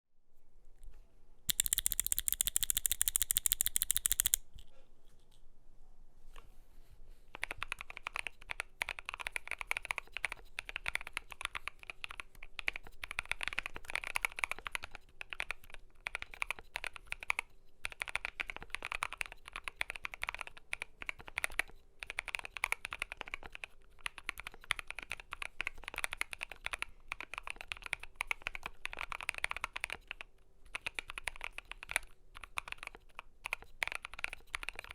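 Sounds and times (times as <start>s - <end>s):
loud harsh rapid clicking: 1.5s - 4.4s
mechanical keyboard typing: 1.5s - 4.5s, 7.4s - 34.9s.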